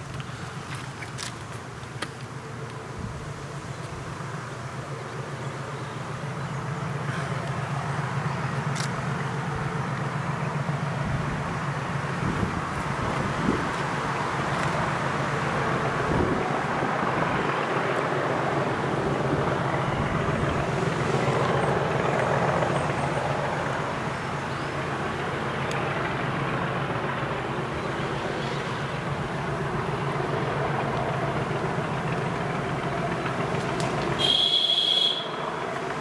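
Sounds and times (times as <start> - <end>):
diesel locomotive engines working hard: 0.0 - 36.0
engine coughing and spluttering: 6.8 - 11.6.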